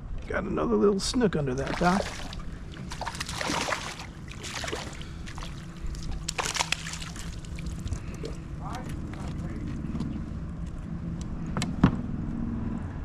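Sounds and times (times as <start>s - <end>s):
faint steady hum: 0.0s - 13.0s
water splashing against kayak: 1.5s - 9.4s.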